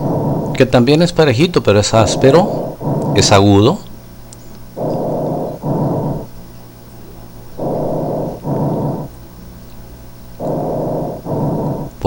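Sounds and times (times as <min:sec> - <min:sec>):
harsh rustle of breathing: 0:02.0 - 0:03.8, 0:04.8 - 0:06.4, 0:07.6 - 0:09.2, 0:10.4 - 0:12.0.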